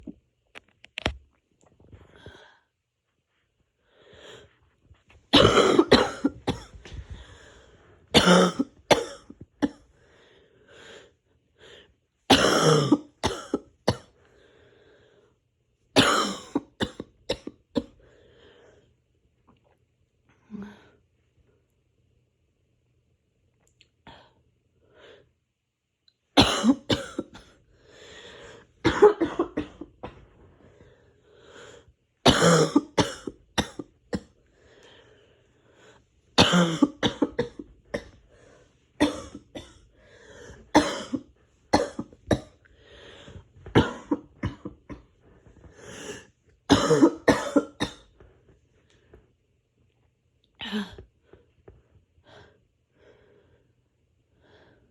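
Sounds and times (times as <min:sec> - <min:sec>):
person coughing harshly: 0:05.3 - 0:06.8, 0:08.2 - 0:09.8, 0:12.3 - 0:14.1, 0:16.0 - 0:17.9, 0:26.4 - 0:27.5, 0:28.8 - 0:30.2, 0:32.2 - 0:34.3, 0:36.4 - 0:38.2, 0:39.0 - 0:39.8, 0:40.7 - 0:42.5, 0:43.7 - 0:45.1, 0:46.7 - 0:48.1.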